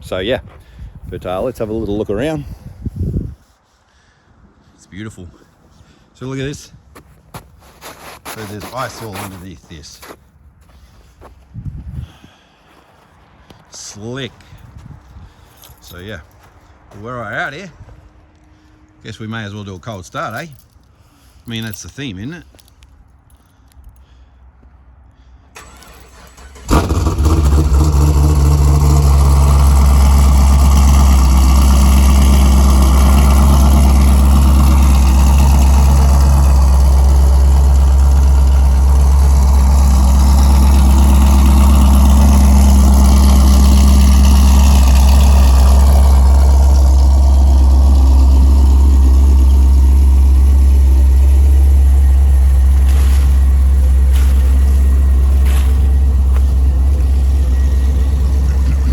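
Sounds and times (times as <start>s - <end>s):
car engine starting and idling: 25.4s - 58.9s.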